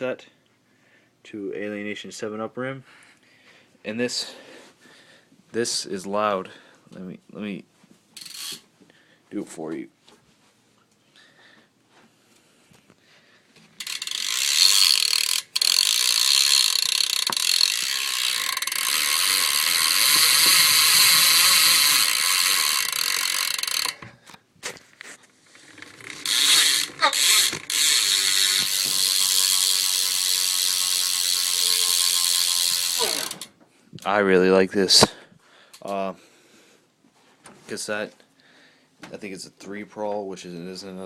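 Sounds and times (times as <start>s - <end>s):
bike hub ratchet buzzing: 8.2s - 8.6s, 13.8s - 24.1s, 25.5s - 33.6s.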